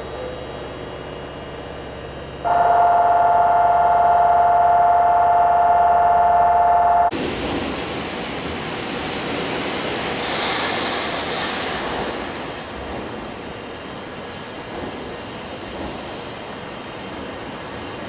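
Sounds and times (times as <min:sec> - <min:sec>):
electric train on rails: 0:00.0 - 0:18.0
brief high whine: 0:02.5 - 0:07.1.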